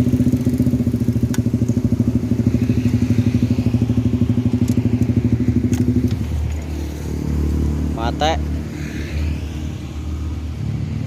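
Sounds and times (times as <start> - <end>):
motorcycle engine running: 0.0 - 8.7.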